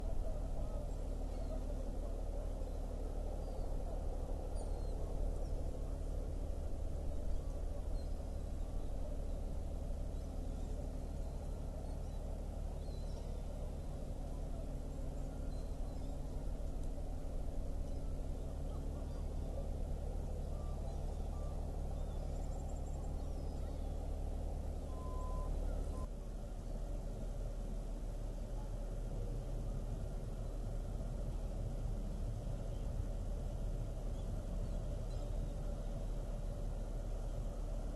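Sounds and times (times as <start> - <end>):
ship engine rumble: 0.0 - 37.9
faint bird chirps: 0.3 - 6.3, 7.0 - 16.7, 17.6 - 26.1, 34.1 - 37.6
faint high chirps: 24.8 - 26.1.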